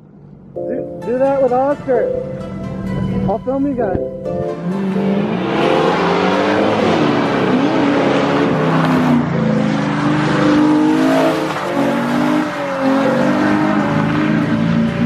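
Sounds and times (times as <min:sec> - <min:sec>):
tyre and road noise: 0:00.0 - 0:15.0
car engine revving hard: 0:04.5 - 0:15.0.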